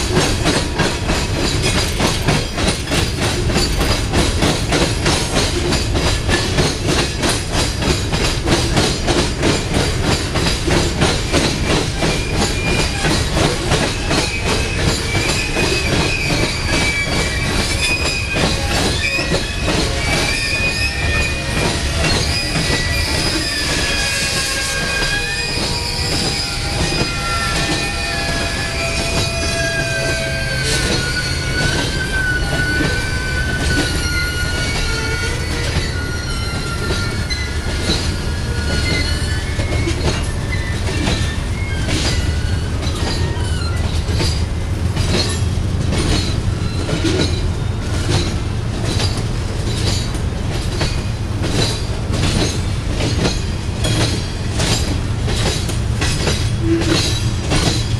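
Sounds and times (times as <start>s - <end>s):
train wheels clicking rhythmically: 0.0s - 57.9s
train wheels squealing: 0.0s - 57.9s.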